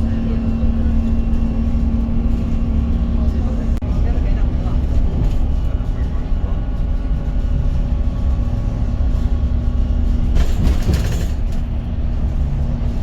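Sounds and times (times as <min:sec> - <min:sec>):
bus low rumble: 0:00.0 - 0:13.0.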